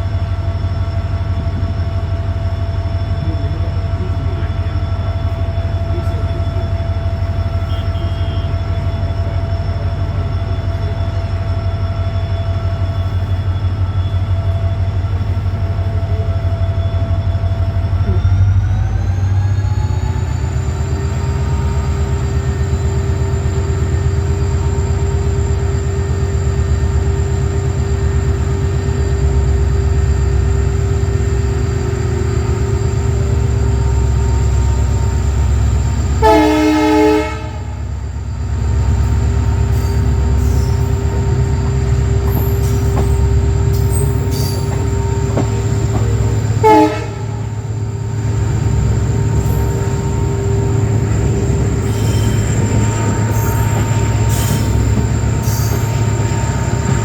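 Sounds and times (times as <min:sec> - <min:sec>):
steady whine: 0:00.0 - 0:57.0
train rumbling: 0:00.0 - 0:57.0
locomotive horn chord: 0:07.6 - 0:08.8, 0:34.0 - 0:38.0, 0:39.9 - 0:57.0.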